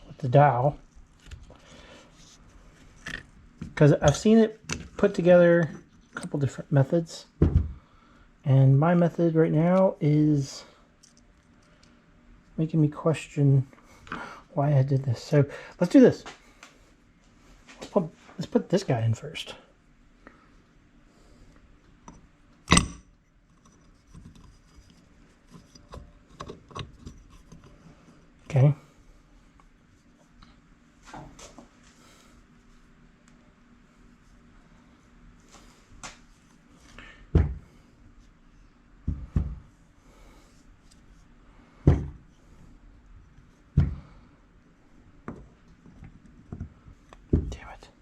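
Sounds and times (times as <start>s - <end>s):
metal parts clinking and scraping: 2.8s - 5.0s, 22.0s - 27.8s
dull knocks of pump parts: 7.4s - 7.8s, 22.7s - 23.1s, 37.3s - 37.7s, 39.0s - 39.7s, 41.8s - 42.3s, 43.7s - 44.2s.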